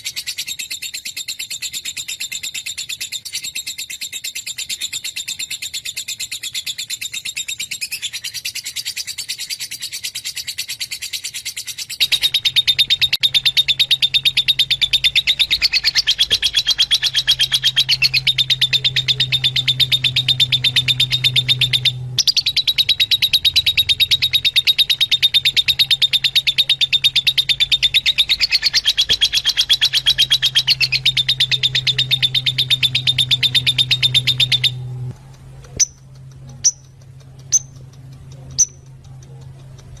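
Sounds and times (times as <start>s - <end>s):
lovebirds chattering: 0.0s - 40.0s
low hum: 12.0s - 40.0s.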